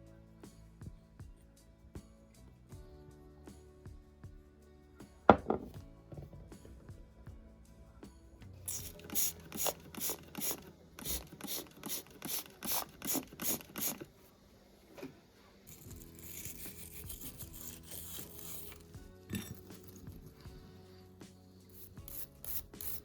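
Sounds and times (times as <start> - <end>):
hand drill scratchy clicks: 8.7 - 14.1, 21.7 - 23.0
soft rubbing hiss: 8.7 - 23.0.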